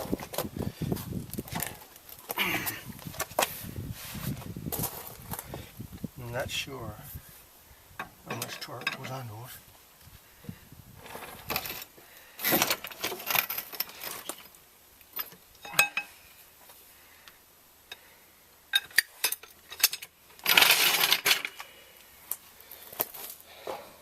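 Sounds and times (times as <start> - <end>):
metal tools clinking: 8.3 - 9.2, 15.1 - 16.2, 18.7 - 21.6
metal rattling scrape: 11.0 - 14.4, 19.2 - 21.6.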